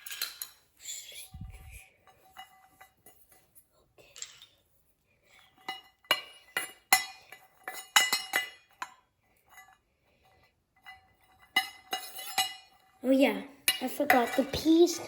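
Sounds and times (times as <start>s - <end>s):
hard objects clinking: 0.0s - 0.7s.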